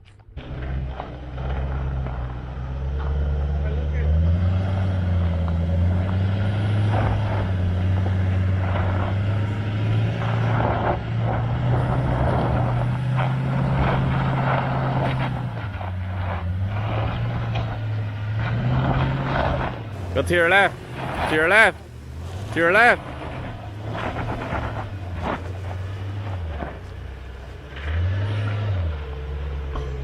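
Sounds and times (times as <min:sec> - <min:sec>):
off-road engine under load: 0:00.0 - 0:30.0
rough noise bursts: 0:11.7 - 0:27.5.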